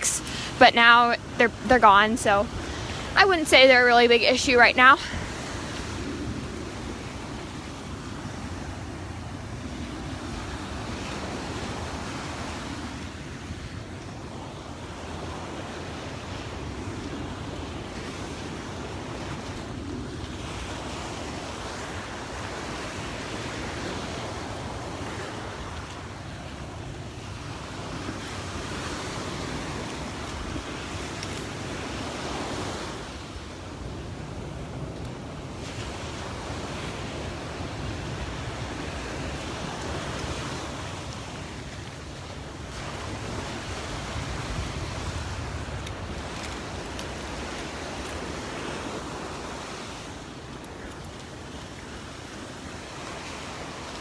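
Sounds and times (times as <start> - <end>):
surf breaking on beach: 0.0 - 54.0
wind rumbling on microphone: 0.0 - 54.0.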